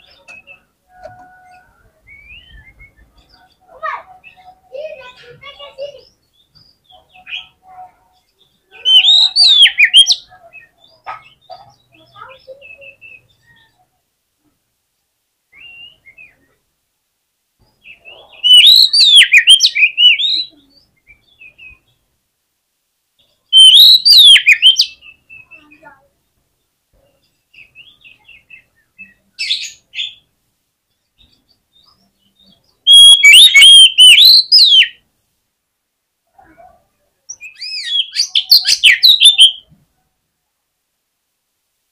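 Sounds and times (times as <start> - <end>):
songbird whistling and chirping: 0.0 - 5.1, 8.3 - 13.8, 15.5 - 16.6, 17.7 - 22.0, 23.5 - 25.9, 31.2 - 35.0, 37.3 - 39.7
soft bird calls: 0.0 - 14.6, 17.6 - 22.0, 23.2 - 35.0, 36.3 - 39.8.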